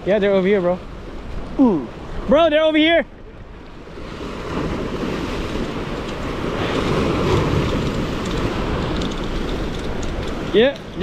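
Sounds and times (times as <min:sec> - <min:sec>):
surf washing against rocks: 0:00.0 - 0:11.0
wind buffeting microphone: 0:03.2 - 0:11.0.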